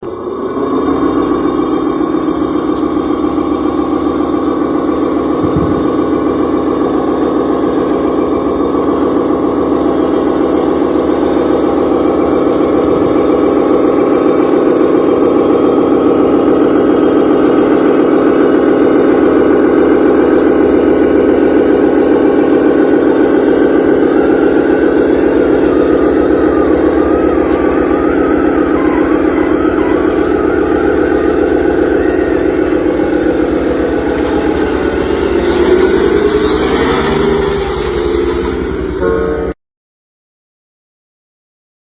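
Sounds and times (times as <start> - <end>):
engine running: 0.0 - 39.6.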